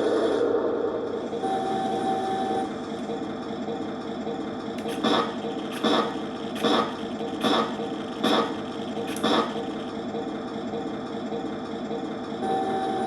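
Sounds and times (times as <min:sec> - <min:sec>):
model tank mechanical running: 0:02.0 - 0:13.0
sharp clack: 0:04.8 - 0:09.7.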